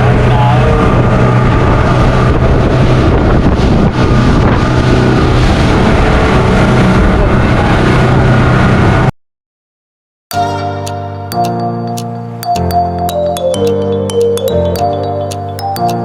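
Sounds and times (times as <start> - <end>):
boat engine running: 0.0 - 9.1
wind rushing over microphone: 0.0 - 9.1
music: 10.3 - 16.0.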